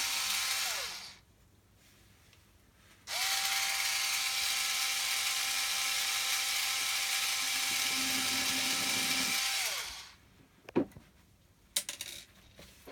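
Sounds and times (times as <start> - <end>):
cordless drill whining: 0.0 - 1.2, 3.1 - 10.2.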